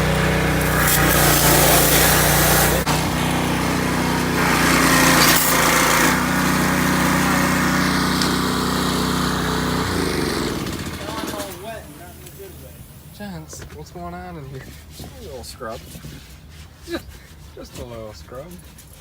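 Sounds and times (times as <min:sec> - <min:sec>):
small engine running: 0:00.0 - 0:11.8
hissing: 0:00.0 - 0:12.8.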